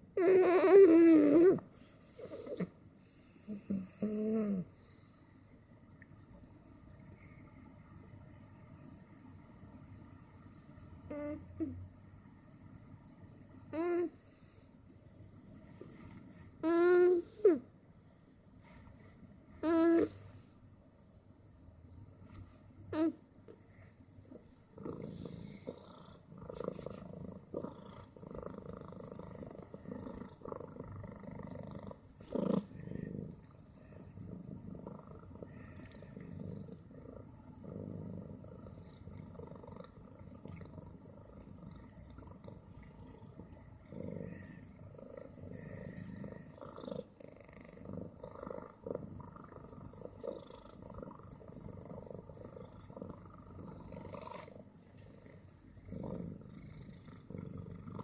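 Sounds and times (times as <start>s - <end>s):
cat purring loudly: 0.2s - 2.8s, 3.4s - 5.1s, 24.2s - 58.0s.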